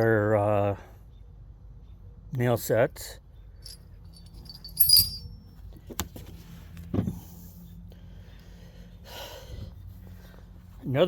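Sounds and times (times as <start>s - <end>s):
metal tools clinking: 3.6s - 5.4s.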